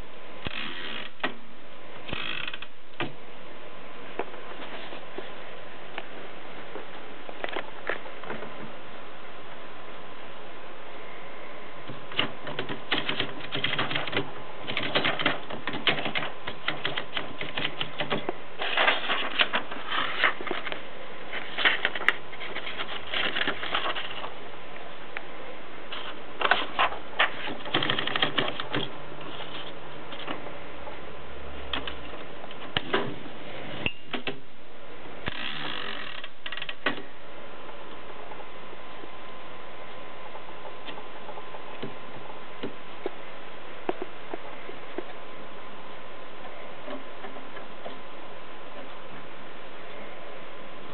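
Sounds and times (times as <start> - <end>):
typewriter key strikes: 12.1 - 19.6.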